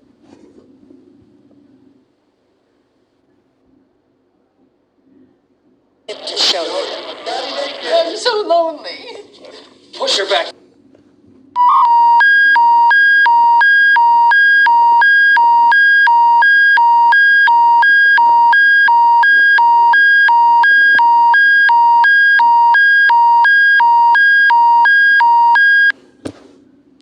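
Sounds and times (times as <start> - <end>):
electronic two-tone alert signal: 11.6 - 25.9.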